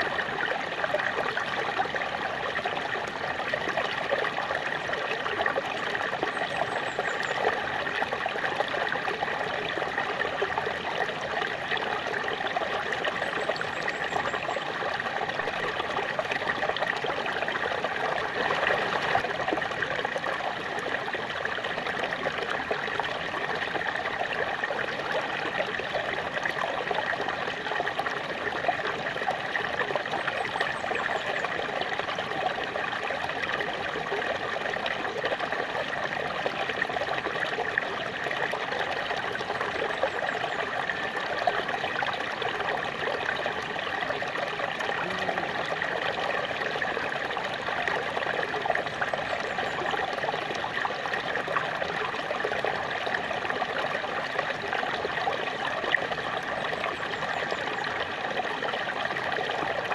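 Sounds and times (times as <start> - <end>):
waterfall splashing and trickling: 0.0 - 59.9.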